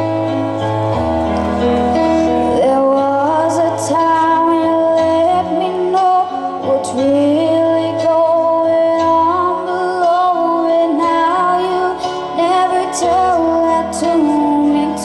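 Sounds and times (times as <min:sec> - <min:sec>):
sustained instrumental backing: 0:00.0 - 0:06.8
woman singing: 0:02.5 - 0:15.0.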